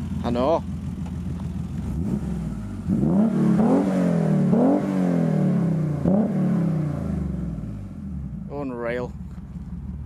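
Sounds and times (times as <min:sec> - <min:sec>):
car engine revving: 0:00.8 - 0:08.5.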